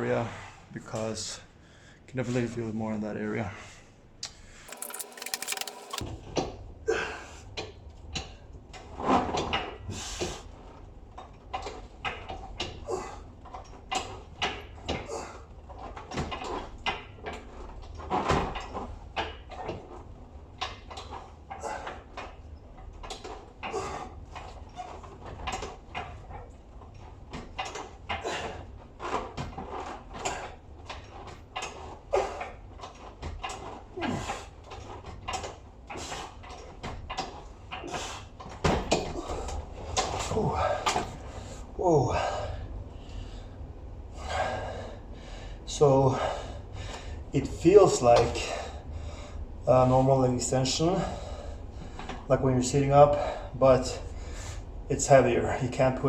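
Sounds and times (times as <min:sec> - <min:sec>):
exercise machine clicking and creaking: 0:04.7 - 0:06.0, 0:20.6 - 0:41.3.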